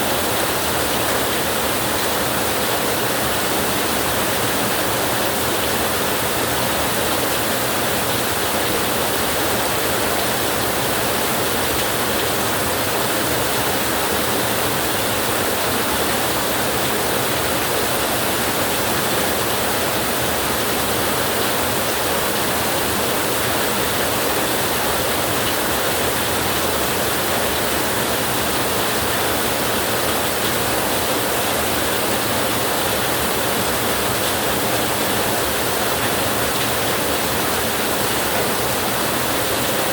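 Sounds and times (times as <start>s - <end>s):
heavy rain on a tin roof: 0.0s - 39.9s.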